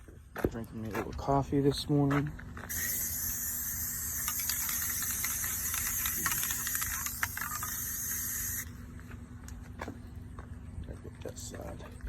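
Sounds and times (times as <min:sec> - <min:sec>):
spray paint hissing: 0:02.7 - 0:08.7.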